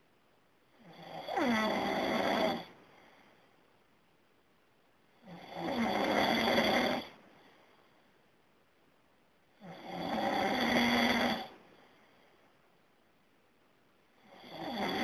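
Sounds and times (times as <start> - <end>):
man snoring: 0.8 - 2.7, 5.2 - 7.2, 9.6 - 11.5, 14.2 - 15.0.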